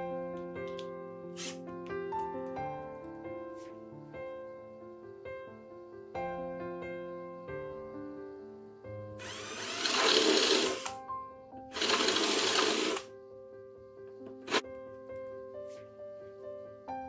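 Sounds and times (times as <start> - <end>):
soft piano music: 0.0 - 17.0
electric drill running: 9.2 - 11.0, 11.7 - 13.1, 14.4 - 14.6.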